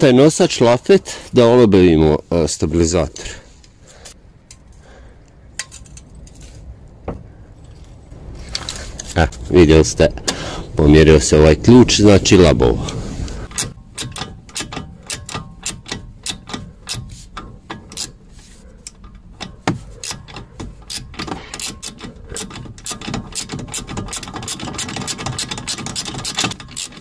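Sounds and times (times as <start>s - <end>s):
ratchet wrench clicking: 13.5s - 18.2s, 18.8s - 27.0s.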